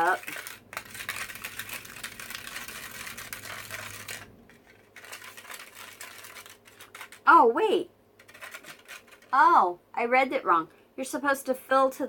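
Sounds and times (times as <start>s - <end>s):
plastic spoon scraping tray: 0.0s - 7.3s, 8.2s - 9.4s.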